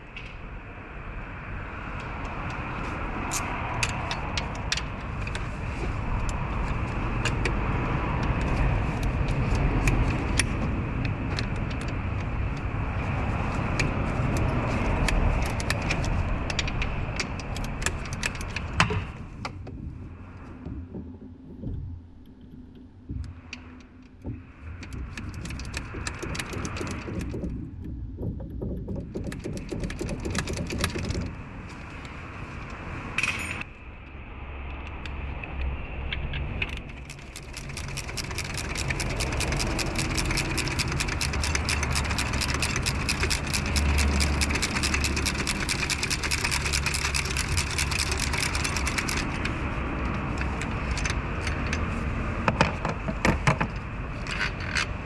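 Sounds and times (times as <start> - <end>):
engine metallic rattling: 24.3 - 32.3, 36.7 - 52.0.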